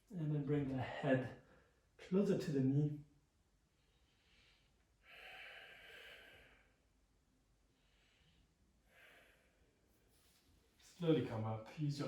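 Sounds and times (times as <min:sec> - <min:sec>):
person exhaling: 0:05.0 - 0:06.8.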